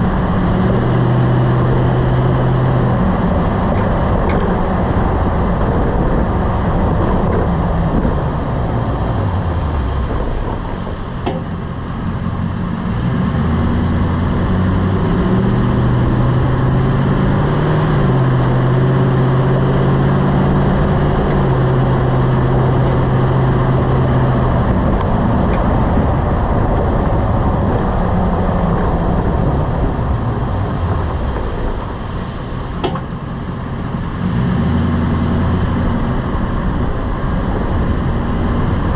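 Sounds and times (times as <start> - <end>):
road noise: 0.0 - 38.9
truck engine revving: 0.0 - 38.9
clunk under braking: 10.0 - 11.8, 32.7 - 33.5.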